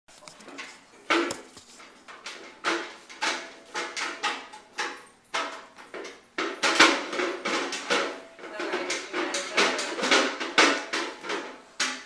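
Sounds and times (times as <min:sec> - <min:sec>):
child banging on hard object: 0:06.4 - 0:12.0.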